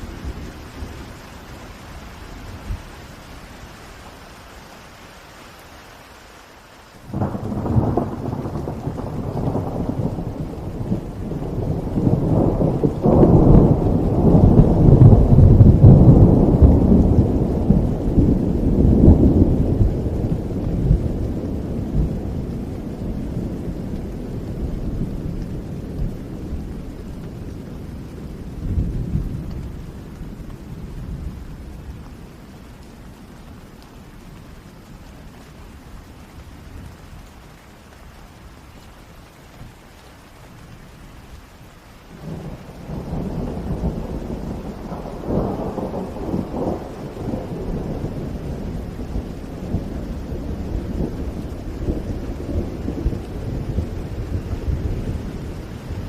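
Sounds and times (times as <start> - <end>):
steady rain: 0.0 - 56.0
thunder clap and rumble: 7.0 - 33.4, 42.2 - 56.0.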